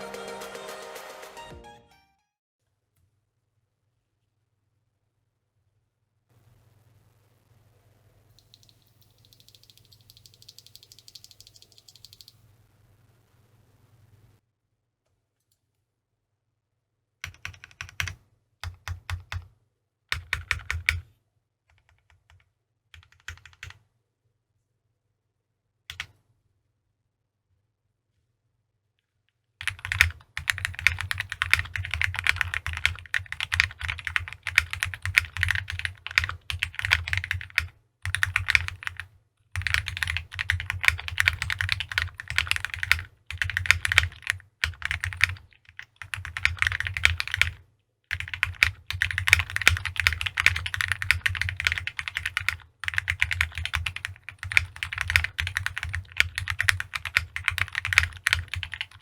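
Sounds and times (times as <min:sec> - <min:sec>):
fast mechanical keyboard typing: 0:08.4 - 0:12.4, 0:17.2 - 0:19.5, 0:20.1 - 0:21.0, 0:21.7 - 0:23.8, 0:29.6 - 0:59.0.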